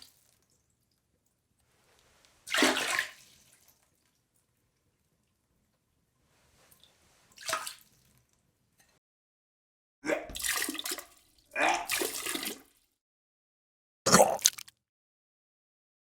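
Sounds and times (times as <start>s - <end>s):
liquid splashing into toilet water: 2.4s - 5.4s, 6.8s - 8.5s, 10.3s - 13.0s, 14.1s - 14.7s
person retching: 14.1s - 14.8s.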